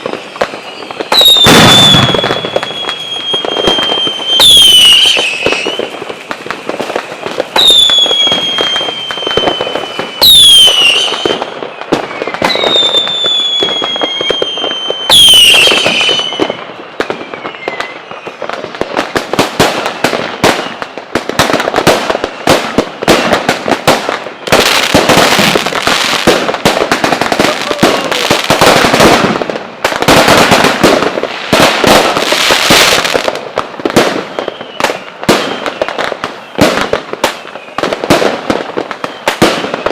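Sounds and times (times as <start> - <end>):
firework bangs: 0.0 - 39.9
firework whistles: 0.0 - 39.9
fireworks crackling and popping: 0.0 - 39.9.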